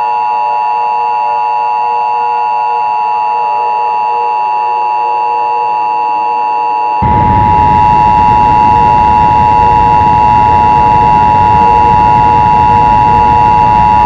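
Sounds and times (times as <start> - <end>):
two-tone alarm: 1.0 - 14.0
rough noise: 7.0 - 14.0.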